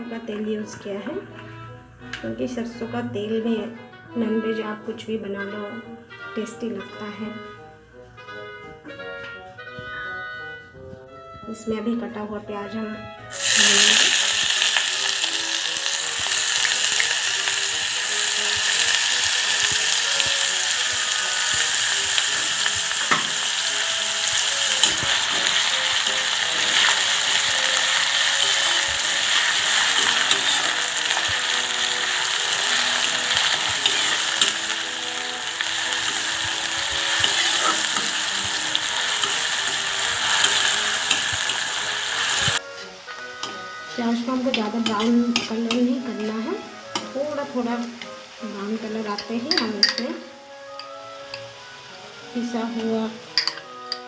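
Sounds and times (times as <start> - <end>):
onion sizzling in hot oil: 13.3 - 50.0.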